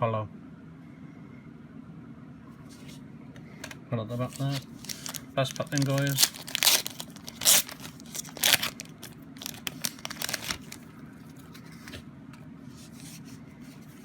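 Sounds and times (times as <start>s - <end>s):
foil wrapper tearing: 4.2s - 10.9s
foil wrapper crinkling: 4.2s - 11.5s.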